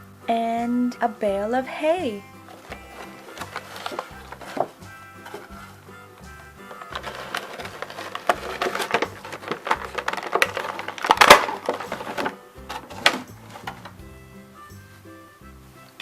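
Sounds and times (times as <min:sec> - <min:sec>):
faint background music: 0:00.0 - 0:16.0
plastic toys being handled: 0:02.4 - 0:14.1.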